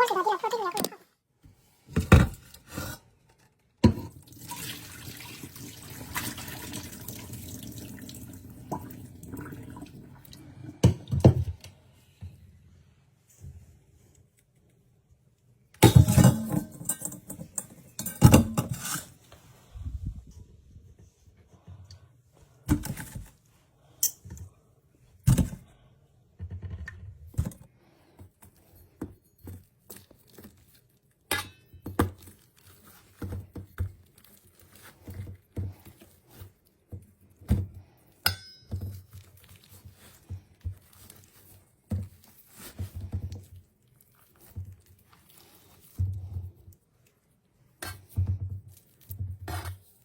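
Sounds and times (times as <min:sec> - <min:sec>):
kitchen utensils and dishes clinking: 0:15.8 - 0:19.2.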